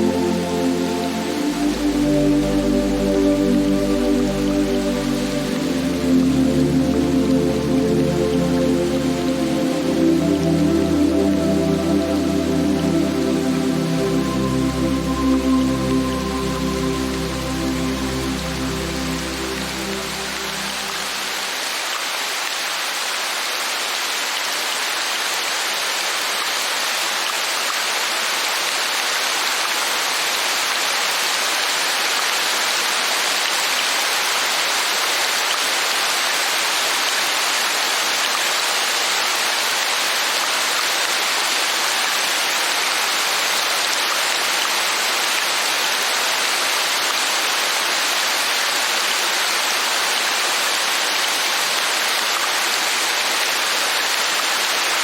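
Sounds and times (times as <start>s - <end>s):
heavy rain hiss: 0.0s - 26.4s.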